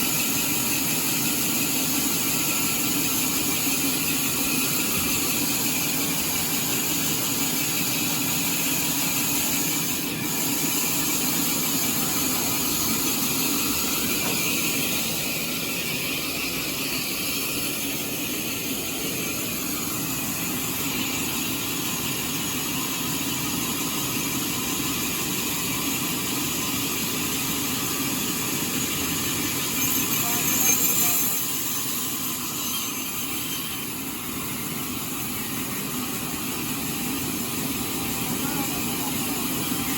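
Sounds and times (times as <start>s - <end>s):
sawmill saw and machinery running: 0.0s - 39.9s.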